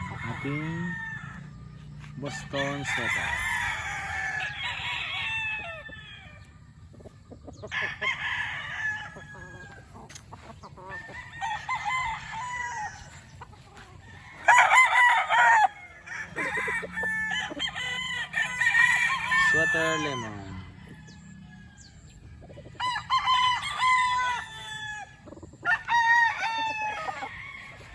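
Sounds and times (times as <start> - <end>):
roosters crowing: 0.0 - 27.9.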